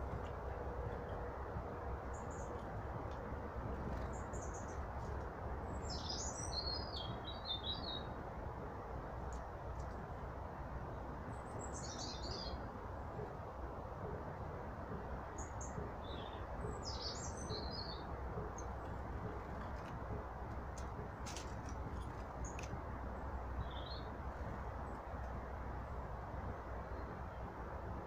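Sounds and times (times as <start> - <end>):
low background rush: 0.0 - 28.0
small birds chirping: 2.0 - 2.8, 3.7 - 8.2, 11.2 - 13.4, 15.2 - 20.0, 20.6 - 25.2.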